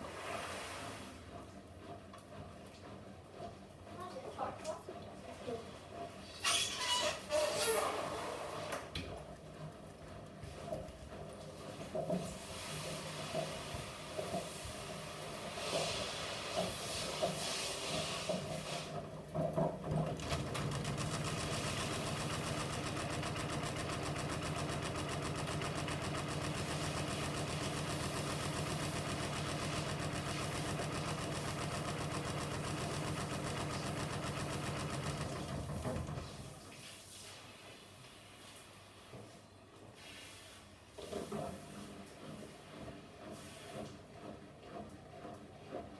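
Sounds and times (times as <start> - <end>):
washing machine spinning: 5.2 - 36.7.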